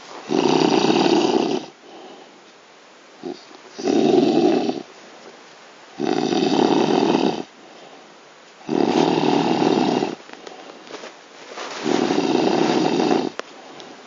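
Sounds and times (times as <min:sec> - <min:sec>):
quiet breathing: 0:00.0 - 0:02.6, 0:06.8 - 0:14.0
man snoring loudly: 0:00.3 - 0:01.7, 0:03.2 - 0:04.8, 0:06.0 - 0:07.5, 0:08.6 - 0:10.2, 0:12.1 - 0:13.4
short snort: 0:08.6 - 0:10.2, 0:11.8 - 0:13.4.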